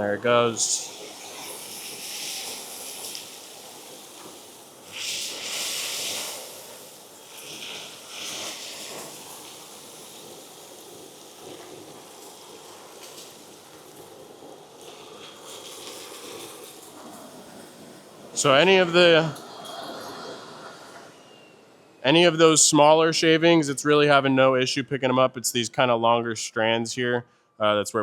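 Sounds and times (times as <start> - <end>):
industrial vacuum sucking debris: 0.0 - 23.4.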